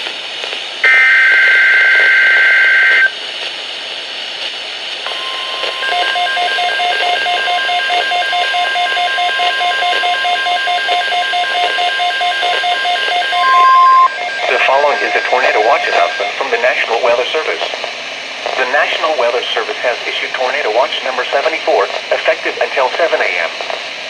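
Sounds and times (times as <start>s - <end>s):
steady warning alarm tone: 0.8s - 3.1s, 5.1s - 17.4s
rapid electronic beeping: 5.1s - 17.3s
data header screech: 9.0s - 17.2s.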